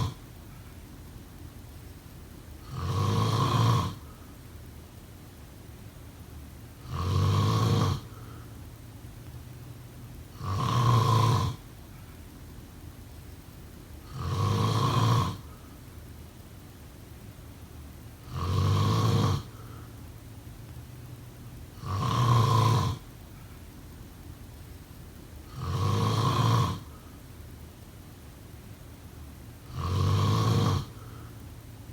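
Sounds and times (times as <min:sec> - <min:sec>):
person snoring: 0:00.0 - 0:00.2, 0:02.6 - 0:04.2, 0:06.8 - 0:08.5, 0:10.3 - 0:11.7, 0:14.0 - 0:15.7, 0:18.2 - 0:19.9, 0:21.8 - 0:23.1, 0:25.5 - 0:27.1, 0:29.6 - 0:31.4.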